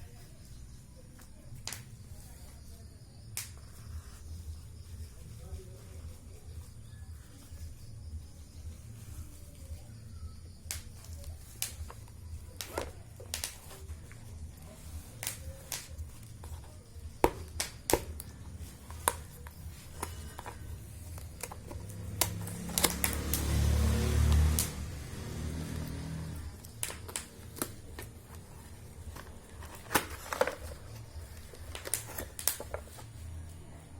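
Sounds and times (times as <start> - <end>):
packaging rustling: 26.5 - 33.2.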